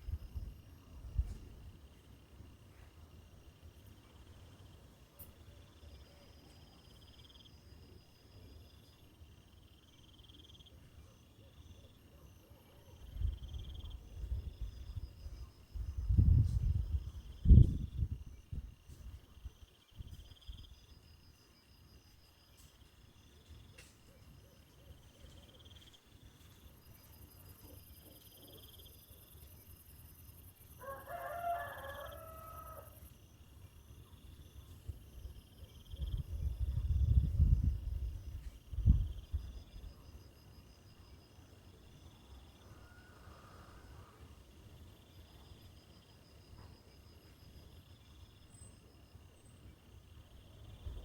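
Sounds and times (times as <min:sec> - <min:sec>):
crickets chirping: 0:00.0 - 0:51.0
insects trilling: 0:25.0 - 0:51.0
rooster crowing: 0:30.8 - 0:33.1, 0:42.7 - 0:44.2.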